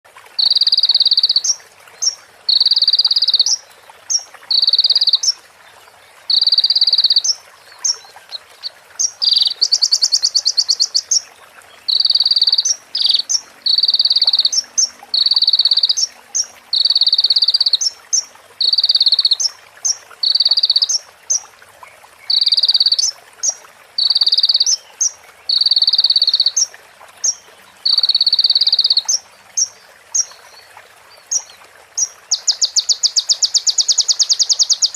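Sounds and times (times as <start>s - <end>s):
bird singing buzzy trills: 0.4s - 5.4s, 6.3s - 21.4s.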